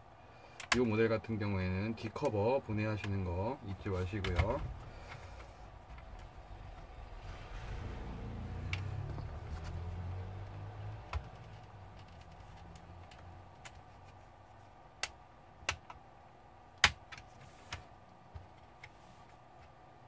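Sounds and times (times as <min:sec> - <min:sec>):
low hum: 0:04.6 - 0:13.7.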